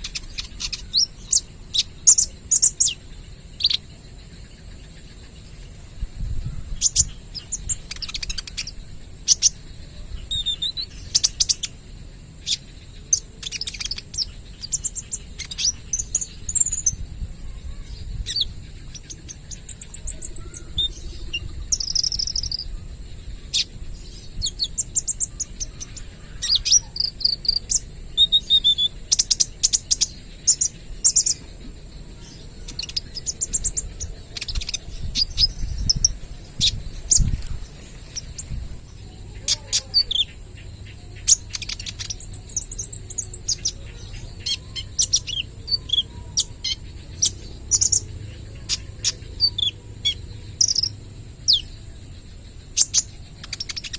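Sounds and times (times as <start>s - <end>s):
bird chirping and trilling: 0.0s - 53.9s.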